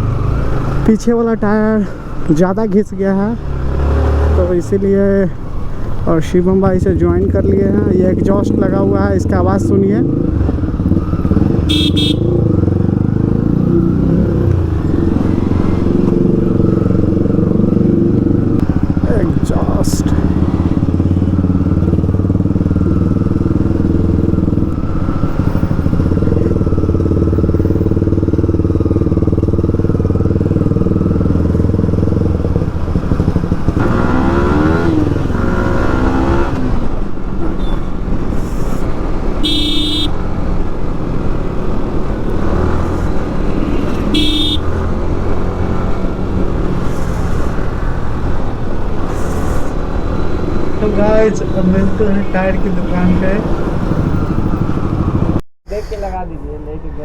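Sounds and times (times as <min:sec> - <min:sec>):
motorcycle engine running: 0:06.5 - 0:35.7, 0:38.1 - 0:55.4
horn beeps: 0:11.0 - 0:12.6, 0:39.4 - 0:40.2, 0:43.9 - 0:44.8.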